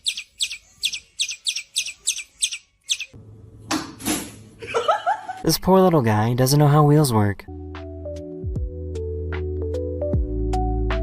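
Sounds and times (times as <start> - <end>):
birds chirping sharply: 0.0 - 3.2.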